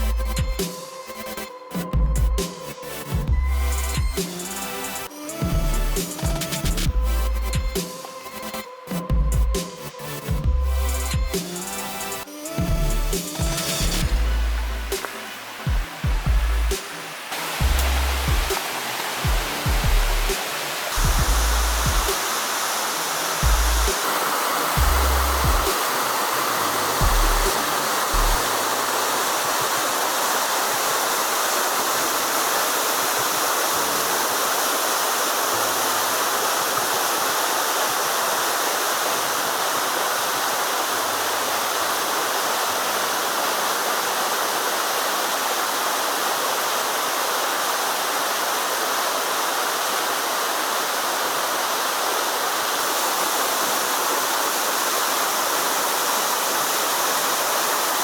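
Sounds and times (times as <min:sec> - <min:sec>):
waterfall pouring: 0:10.7 - 0:58.0
short low thumps: 0:17.6 - 0:18.6, 0:19.3 - 0:20.3, 0:21.0 - 0:22.1, 0:24.8 - 0:25.7.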